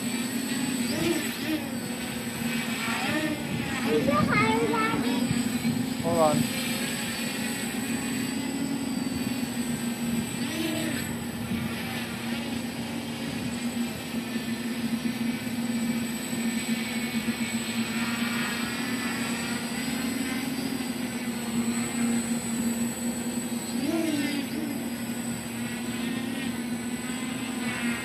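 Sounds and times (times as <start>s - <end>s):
quadcopter propellers buzzing: 0.0s - 28.0s.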